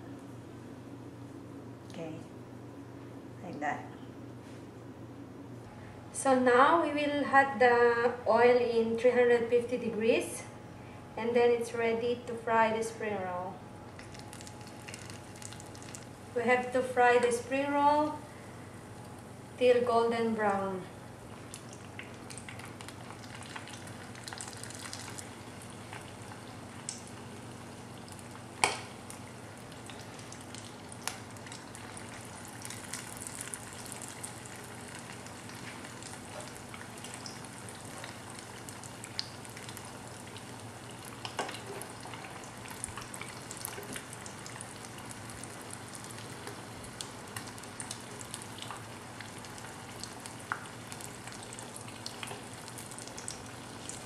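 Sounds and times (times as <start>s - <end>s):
food deep-frying in oil: 13.9s - 18.4s, 19.0s - 54.0s.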